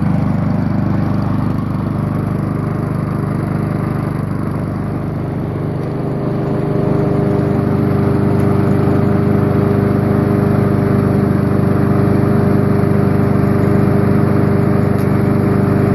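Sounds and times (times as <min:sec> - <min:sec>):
lawnmower engine running: 0:00.0 - 0:15.9.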